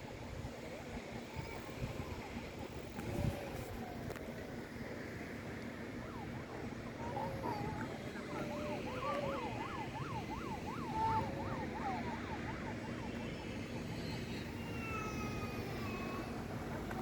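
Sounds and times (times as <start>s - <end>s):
electronic siren yelping: 5.9s - 17.0s.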